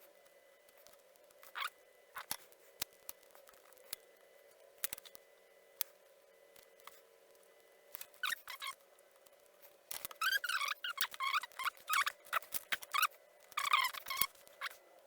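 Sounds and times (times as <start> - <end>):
faint steady hum: 0.0 - 15.0
small tool clicks: 4.8 - 5.2
squeaky scrapes: 10.2 - 14.8.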